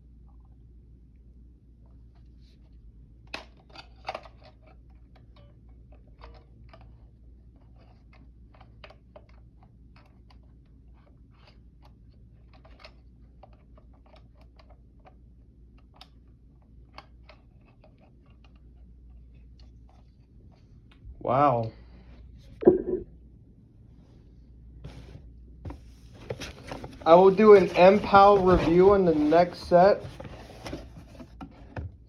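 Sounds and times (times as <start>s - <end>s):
packaging clicks and rustles: 25.7s - 31.4s.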